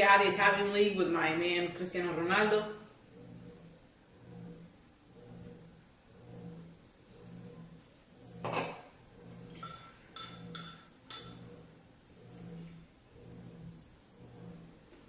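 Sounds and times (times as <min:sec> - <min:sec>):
metal spoon striking a bowl: 0:09.6 - 0:11.4.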